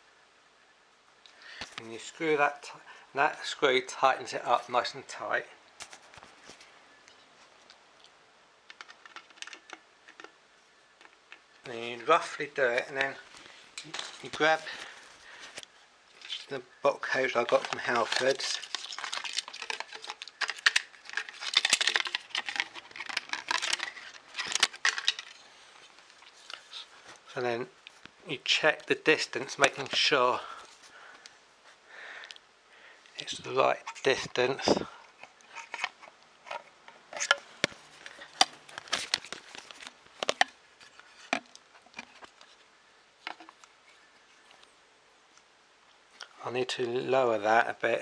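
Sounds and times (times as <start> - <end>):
small plastic clicks and rattles: 8.7 - 10.4, 17.6 - 25.4.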